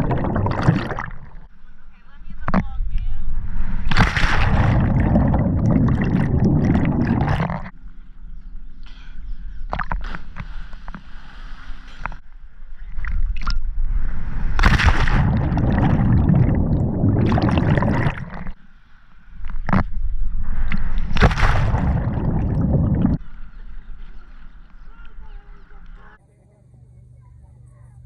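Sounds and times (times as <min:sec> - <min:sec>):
water sloshing and gurgling: 0:00.0 - 0:01.6, 0:03.2 - 0:07.8, 0:09.6 - 0:18.6, 0:19.3 - 0:26.0.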